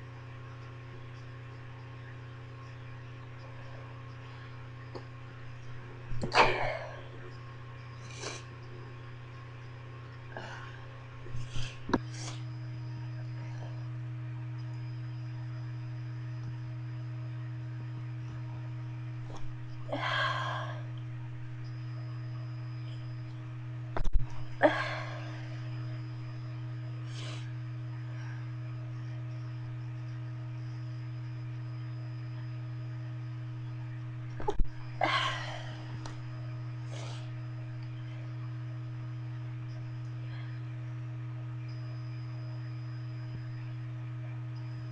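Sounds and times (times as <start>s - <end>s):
steady low hum: 0.0s - 44.9s
person stifling sneezes: 6.3s - 7.0s.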